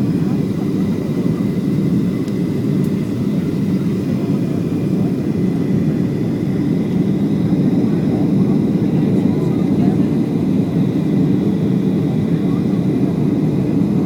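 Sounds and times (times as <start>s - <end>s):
airliner cabin drone in flight: 0.0s - 14.0s.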